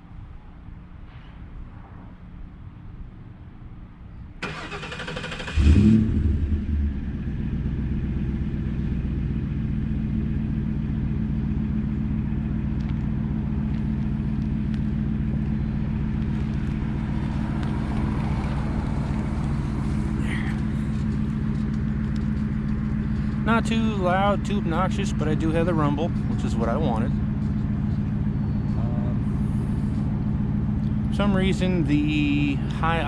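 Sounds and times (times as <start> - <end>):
starter cranking engine: 4.4 - 6.1
car engine idling: 4.4 - 33.0.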